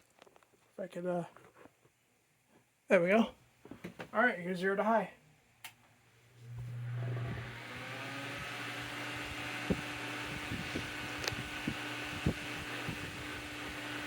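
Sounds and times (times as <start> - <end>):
electric fan running: 6.2 - 14.0.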